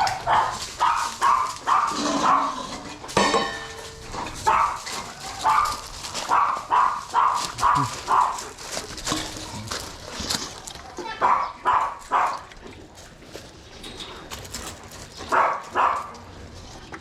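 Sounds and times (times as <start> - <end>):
dog barking: 0.0 - 2.6, 4.4 - 8.5, 10.8 - 12.4, 15.3 - 16.2.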